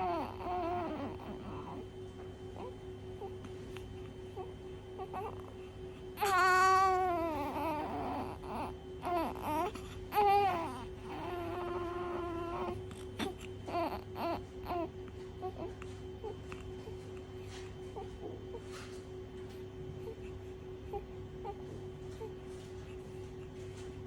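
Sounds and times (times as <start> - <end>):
newborn baby crying: 0.0 - 1.8, 2.6 - 5.5, 6.1 - 17.0.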